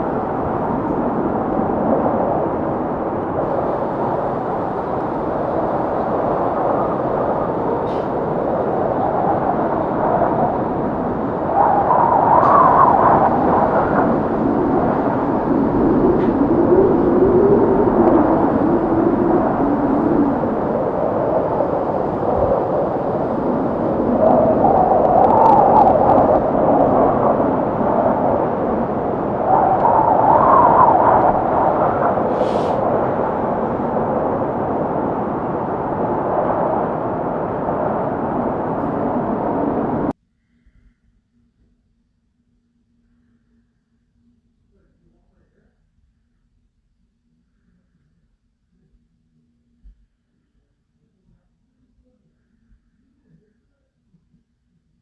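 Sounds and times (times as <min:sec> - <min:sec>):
faint low hum: 0:00.0 - 0:26.6
howling gusting wind: 0:00.0 - 0:40.1.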